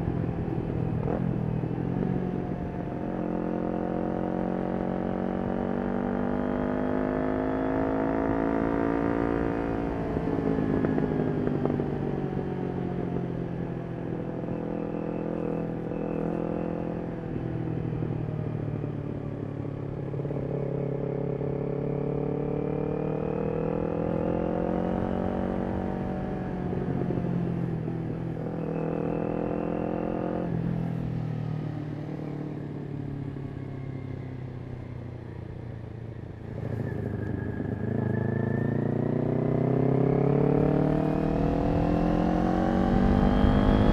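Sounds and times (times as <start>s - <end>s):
motorcycle engine revving: 20.1s - 31.0s, 36.5s - 43.9s.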